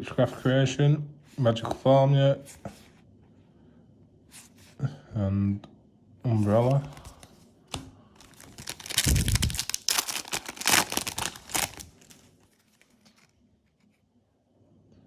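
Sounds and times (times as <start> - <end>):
foil wrapper tearing and crinkling: 8.2 - 13.3.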